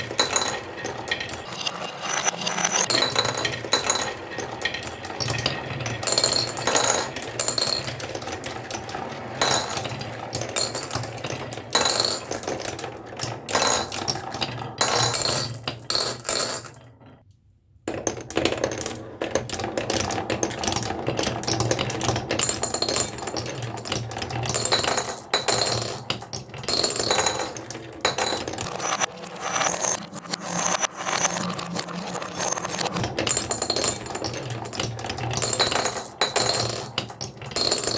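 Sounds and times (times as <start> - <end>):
marbles clicking and knocking: 0.1 - 4.1, 26.8 - 37.9.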